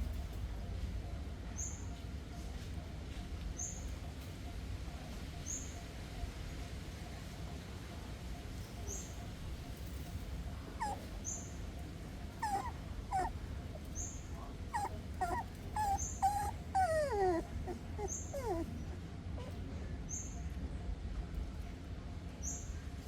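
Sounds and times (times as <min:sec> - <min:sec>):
puppies whimpering: 0:10.8 - 0:11.6, 0:12.3 - 0:19.6.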